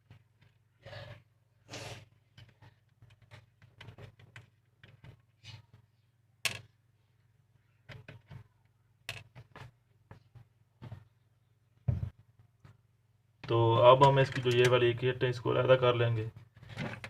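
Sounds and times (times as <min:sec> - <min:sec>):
small parts clicking and tapping: 0:07.8 - 0:10.4, 0:13.9 - 0:14.8.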